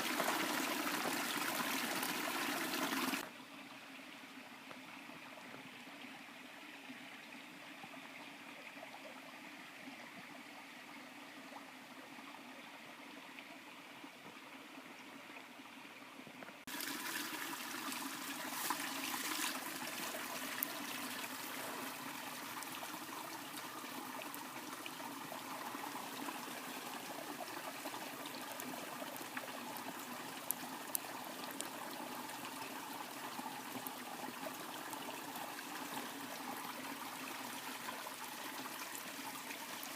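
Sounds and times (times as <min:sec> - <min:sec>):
running water rushing: 0:00.0 - 0:03.3, 0:16.6 - 0:39.9.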